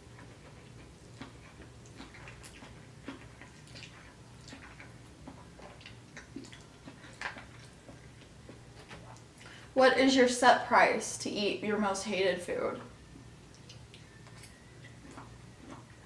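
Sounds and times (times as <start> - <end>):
person chewing food: 0.0 - 9.6, 13.1 - 16.0
low steady hum: 0.0 - 16.0.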